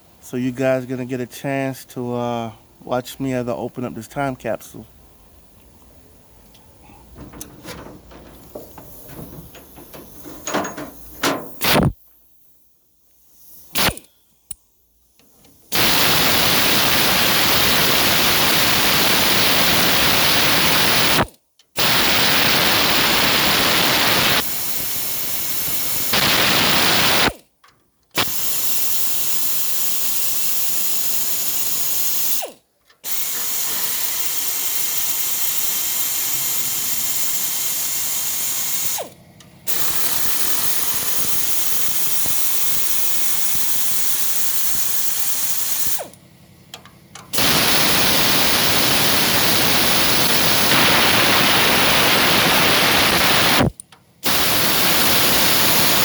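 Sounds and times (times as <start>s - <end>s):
air tool hissing: 6.6s - 27.4s, 28.2s - 46.2s, 47.3s - 56.0s
tools knocking on metal: 7.1s - 11.6s.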